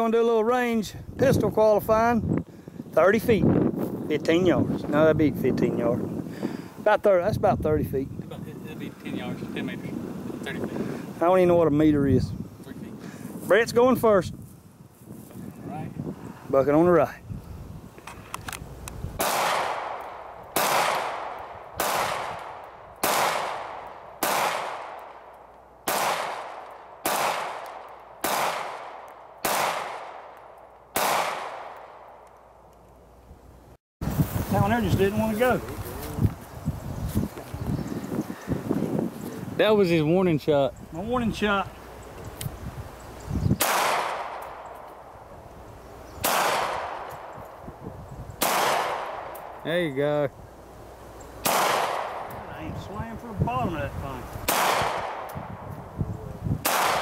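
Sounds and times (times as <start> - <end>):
pistol shots echoing: 19.2 - 32.2, 43.6 - 45.0, 46.2 - 47.3, 48.4 - 49.6, 51.4 - 52.4, 54.5 - 55.3, 56.6 - 57.0.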